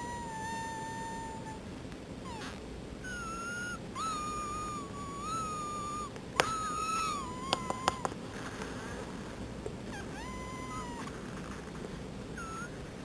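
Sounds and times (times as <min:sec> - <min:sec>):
high squeaky whistling tones: 0:00.0 - 0:01.6, 0:02.3 - 0:08.1, 0:12.4 - 0:12.8.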